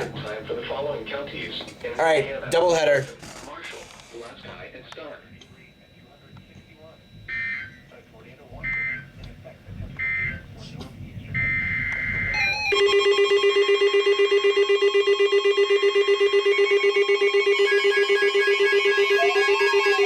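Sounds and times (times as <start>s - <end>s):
pulsing buzzing alert tone: 11.4s - 20.0s
siren-like rising and falling glide: 11.8s - 20.0s.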